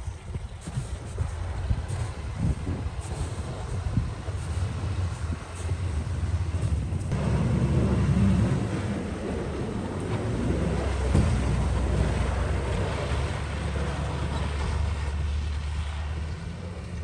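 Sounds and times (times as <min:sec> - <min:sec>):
vehicle engine running: 0:00.0 - 0:17.0.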